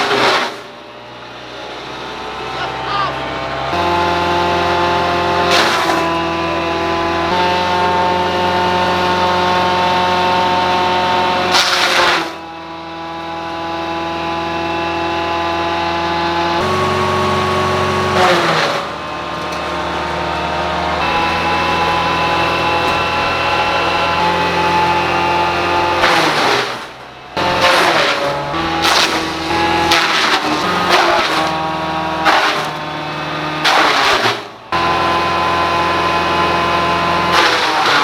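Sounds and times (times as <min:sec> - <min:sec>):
wood chipper engine running: 0:00.0 - 0:38.0
wood chipping bursts: 0:05.4 - 0:06.2, 0:11.4 - 0:12.4, 0:16.6 - 0:36.3, 0:37.0 - 0:38.0.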